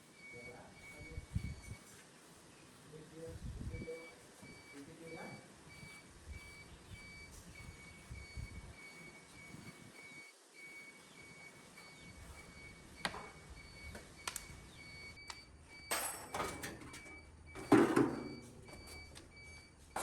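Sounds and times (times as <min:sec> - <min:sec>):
sharp clicks: 0:14.2 - 0:14.5.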